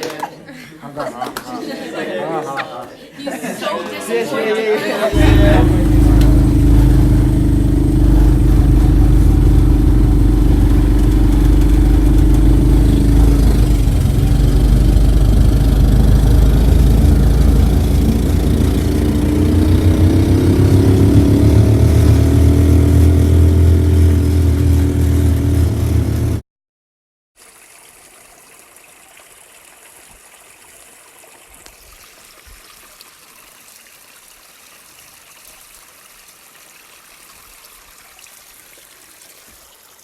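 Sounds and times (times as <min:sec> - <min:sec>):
engine running and revving: 0:05.2 - 0:26.4.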